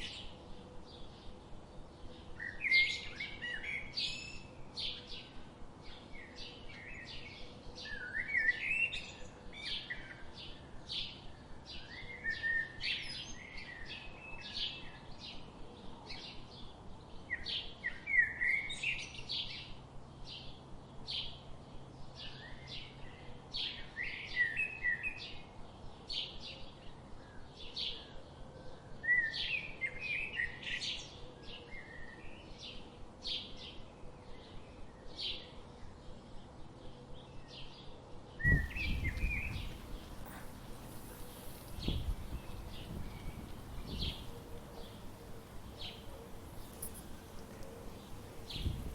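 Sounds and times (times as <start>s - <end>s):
songbirds chirping: 0.0s - 48.9s
bird warbling: 38.5s - 48.9s.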